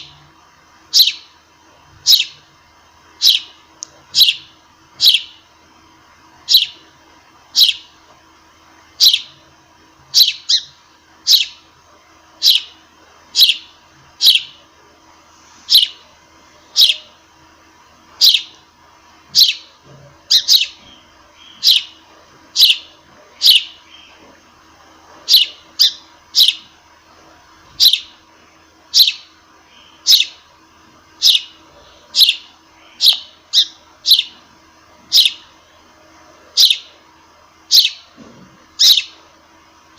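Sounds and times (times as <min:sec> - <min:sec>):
sparrow chirping: 0:00.9 - 0:01.4, 0:02.0 - 0:02.5, 0:03.2 - 0:05.4, 0:06.4 - 0:06.8, 0:07.5 - 0:07.9, 0:09.0 - 0:09.4, 0:10.1 - 0:11.6, 0:12.4 - 0:14.6, 0:15.7 - 0:16.1, 0:16.7 - 0:17.2, 0:18.2 - 0:18.6, 0:19.3 - 0:24.3, 0:25.2 - 0:26.7, 0:27.8 - 0:28.2, 0:28.9 - 0:30.4, 0:31.2 - 0:34.4, 0:35.1 - 0:35.6, 0:36.5 - 0:37.0, 0:37.7 - 0:38.1, 0:38.8 - 0:39.2.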